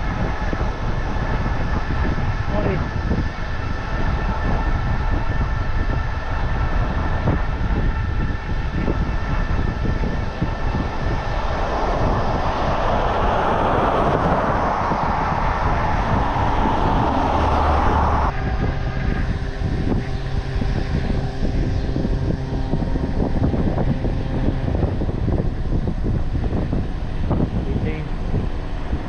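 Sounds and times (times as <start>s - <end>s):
road and engine noise: 0.0s - 29.0s
vehicle passing close: 9.7s - 20.0s.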